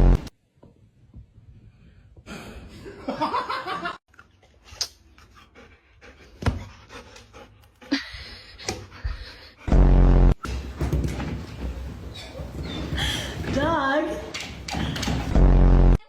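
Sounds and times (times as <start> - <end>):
dog panting: 4.4 - 9.7.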